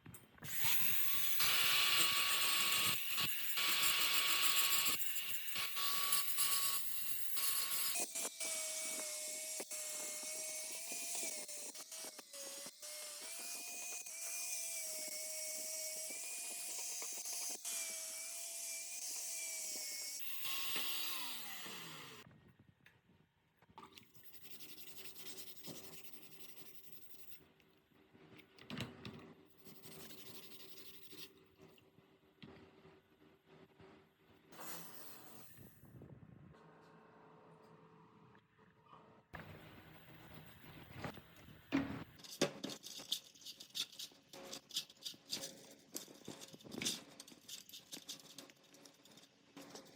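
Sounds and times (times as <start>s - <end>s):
high-speed power tool whining: 0.4s - 22.2s
scrapes and clicks of handling: 42.1s - 49.9s.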